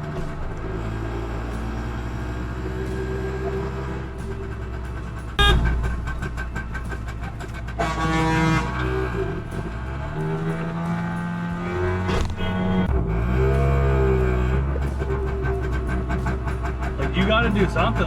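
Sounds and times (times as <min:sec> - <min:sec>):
engine rumble: 0:00.0 - 0:18.0
vehicle horns honking: 0:03.6 - 0:14.7.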